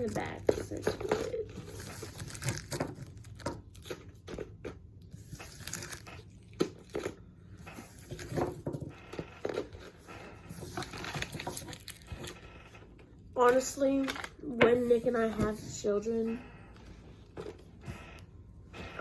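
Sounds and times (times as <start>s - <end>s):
plastic packaging crinkling: 0.0s - 4.6s, 5.2s - 7.2s, 10.6s - 12.4s.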